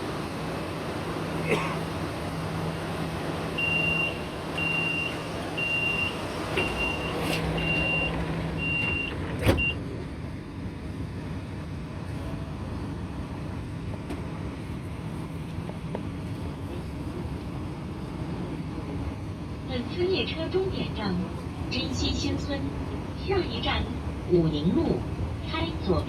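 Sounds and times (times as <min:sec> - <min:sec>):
train rumble: 0:00.0 - 0:26.0
train doors shutting with thud: 0:03.6 - 0:09.8.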